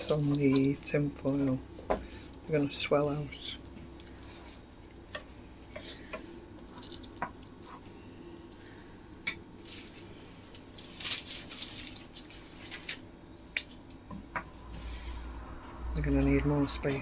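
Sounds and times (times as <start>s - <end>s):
foil crinkling: 9.6s - 13.1s.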